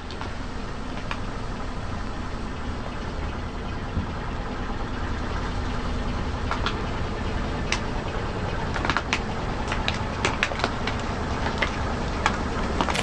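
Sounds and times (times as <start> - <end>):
car engine running low: 0.0 - 13.0.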